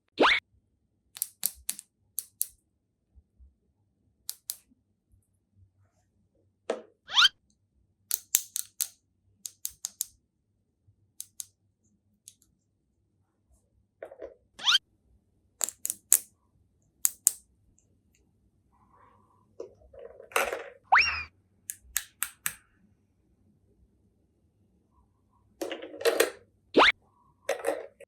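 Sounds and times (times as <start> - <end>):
rising bloop sound effect: 20.9 - 21.3.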